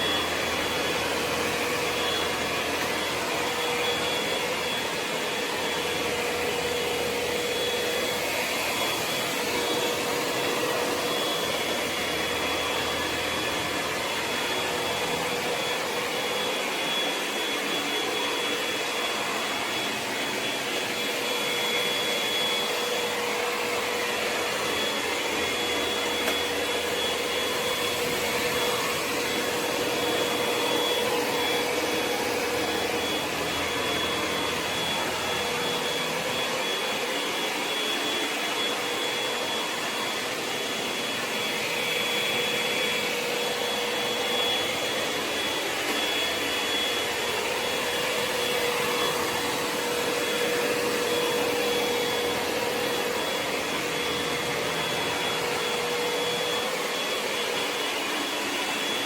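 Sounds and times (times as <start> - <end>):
robot vacuum whirring: 0.0 - 59.0.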